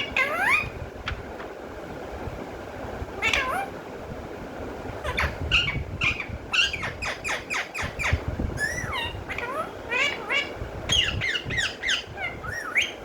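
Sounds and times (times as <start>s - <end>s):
parrot calling: 0.0s - 0.8s, 3.2s - 3.8s, 5.0s - 13.0s.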